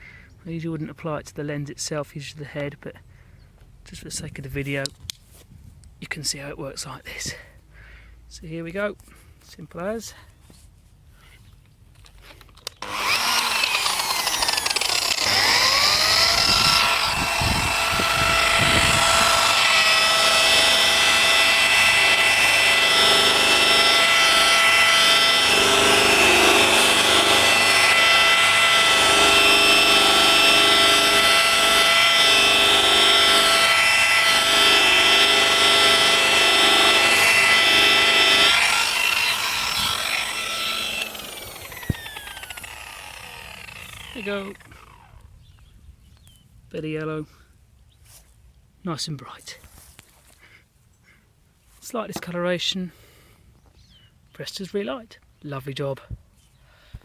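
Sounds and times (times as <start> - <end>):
power tool motor whine: 12.6 - 45.3.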